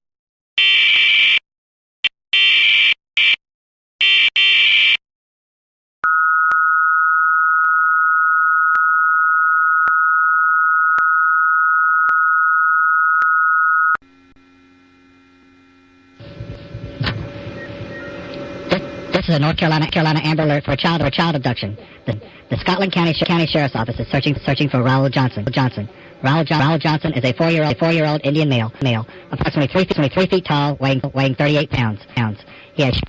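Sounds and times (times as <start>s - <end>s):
faint hum: 14.0s - 33.0s.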